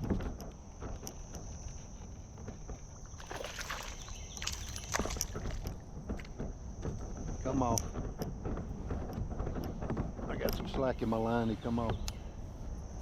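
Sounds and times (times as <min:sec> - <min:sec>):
high insect drone: 0:00.0 - 0:13.0
water splashes: 0:03.1 - 0:05.8.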